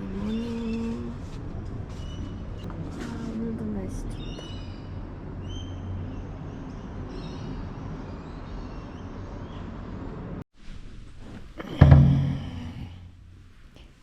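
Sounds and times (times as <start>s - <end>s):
low rumble of traffic: 0.0s - 10.4s.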